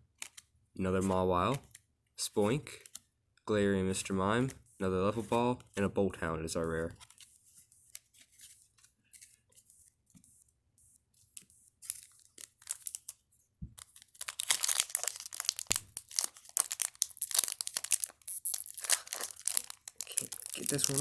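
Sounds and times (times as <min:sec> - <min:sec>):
cards clicking and rustling: 0:00.1 - 0:06.0, 0:06.6 - 0:10.5, 0:11.2 - 0:21.0
foil wrapper crinkling and tearing: 0:11.8 - 0:21.0.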